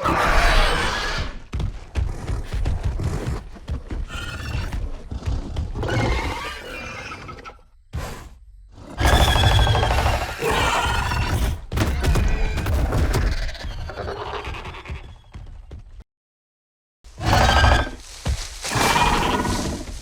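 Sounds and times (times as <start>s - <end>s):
dinosaur roar: 0.0s - 1.4s, 17.2s - 20.0s
dinosaur growls and snarls: 0.0s - 13.4s, 17.2s - 20.0s.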